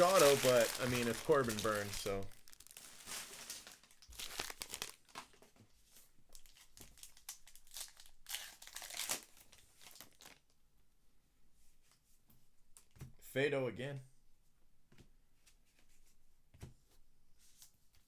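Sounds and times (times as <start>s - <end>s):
cards being handled: 0.0s - 2.3s
card pack wrappers crinkling: 0.0s - 5.4s, 6.4s - 10.4s.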